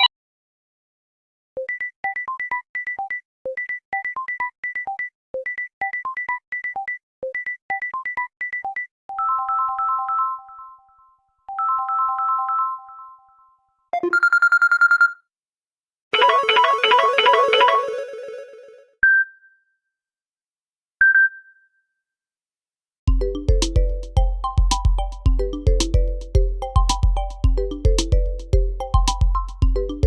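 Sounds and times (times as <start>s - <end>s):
electronic ringtone melody: 9.2s - 13.4s, 14.0s - 15.2s, 16.2s - 18.8s, 23.1s - 30.0s.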